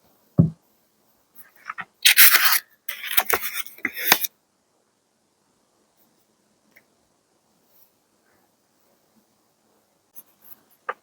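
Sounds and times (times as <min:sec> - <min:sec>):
low thump: 0:00.4 - 0:00.6
paper scraping and crinkling: 0:01.5 - 0:04.3.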